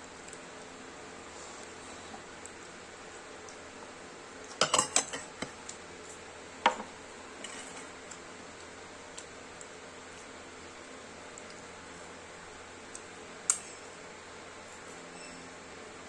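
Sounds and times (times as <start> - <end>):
dishes and cutlery clinking: 4.5 - 5.6, 6.7 - 7.9.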